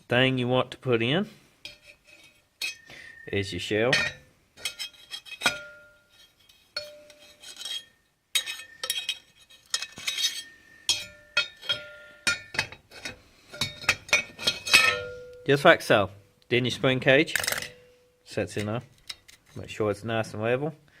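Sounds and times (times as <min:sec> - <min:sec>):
steel parts clinking and scraping: 0:01.6 - 0:03.2, 0:03.9 - 0:15.6, 0:17.1 - 0:19.7.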